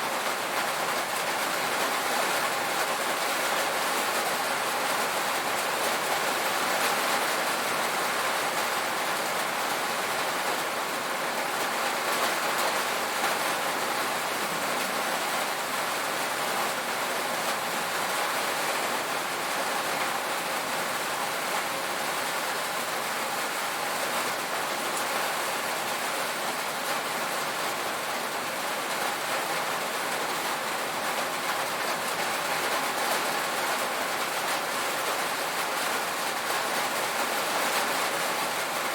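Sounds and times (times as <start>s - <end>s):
heavy rain on a tin roof: 0.0s - 38.9s.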